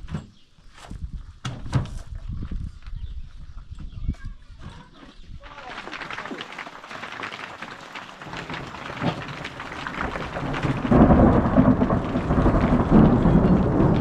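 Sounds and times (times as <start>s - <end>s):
heavy rain falling: 5.6s - 14.0s
rumble of thunder: 8.4s - 14.0s.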